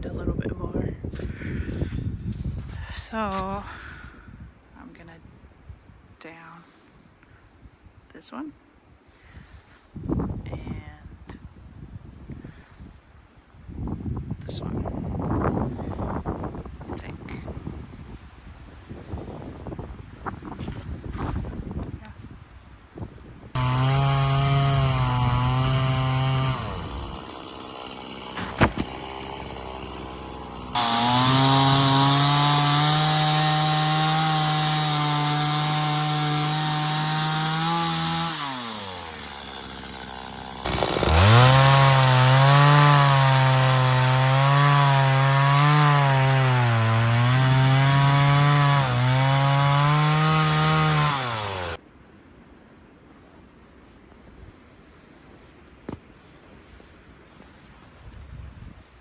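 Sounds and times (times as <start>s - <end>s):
chainsaw cutting wood: 23.6s - 51.8s.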